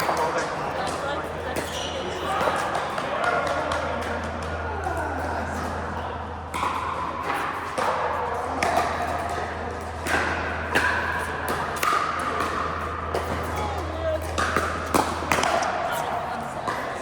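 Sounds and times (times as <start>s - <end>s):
people's voices: 0.0s - 6.5s, 13.2s - 17.0s.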